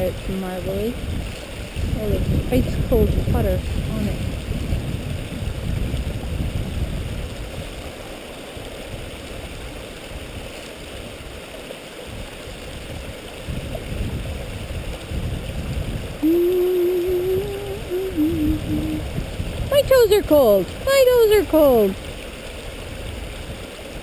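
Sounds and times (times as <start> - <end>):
stream running: 0.0 - 24.0
wind rumble on microphone: 0.0 - 24.0
person singing a held note: 16.2 - 19.0.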